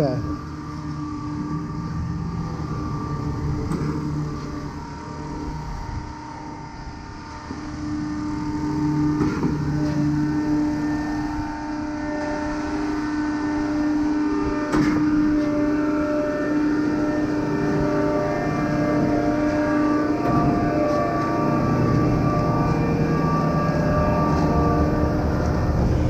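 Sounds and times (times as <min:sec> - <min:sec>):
diesel engine running: 0:00.0 - 0:11.6, 0:15.2 - 0:26.0
deep rumble: 0:21.4 - 0:26.0.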